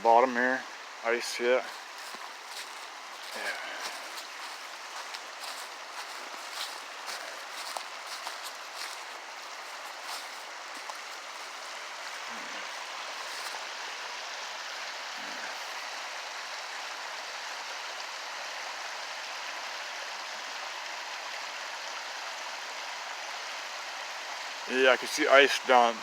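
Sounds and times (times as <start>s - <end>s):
river rushing: 1.7s - 16.6s.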